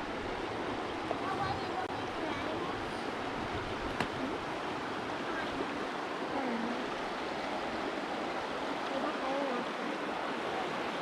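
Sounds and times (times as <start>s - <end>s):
river current rushing: 0.0s - 11.0s
faint voices: 5.2s - 6.9s.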